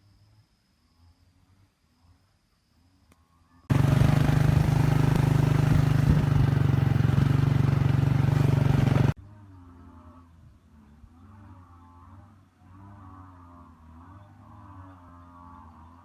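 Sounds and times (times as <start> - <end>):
pulsing machine drone: 3.7 - 9.2.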